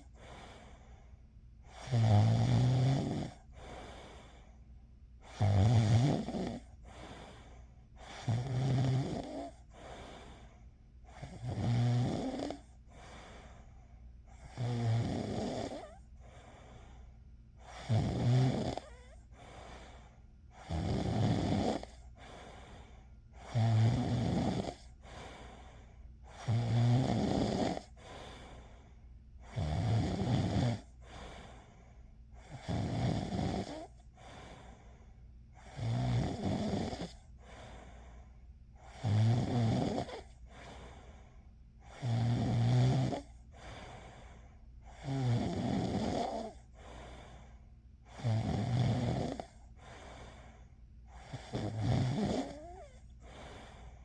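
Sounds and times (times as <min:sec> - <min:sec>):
soft breathing: 0:00.0 - 0:01.8, 0:03.3 - 0:05.3, 0:06.4 - 0:08.5, 0:09.2 - 0:11.4, 0:12.4 - 0:14.6, 0:15.6 - 0:17.9, 0:18.8 - 0:20.7, 0:21.8 - 0:23.6, 0:24.6 - 0:26.5, 0:27.7 - 0:29.6, 0:30.8 - 0:32.6, 0:33.6 - 0:35.8, 0:37.0 - 0:39.0, 0:40.0 - 0:42.0, 0:43.1 - 0:45.1, 0:46.0 - 0:48.3, 0:49.2 - 0:54.0
person snoring: 0:01.7 - 0:04.4, 0:05.2 - 0:10.4, 0:11.1 - 0:13.2, 0:14.4 - 0:16.0, 0:17.6 - 0:22.6, 0:23.4 - 0:25.6, 0:26.3 - 0:28.5, 0:29.4 - 0:31.4, 0:32.4 - 0:34.8, 0:35.6 - 0:37.2, 0:38.8 - 0:41.1, 0:41.8 - 0:47.4, 0:48.0 - 0:54.0.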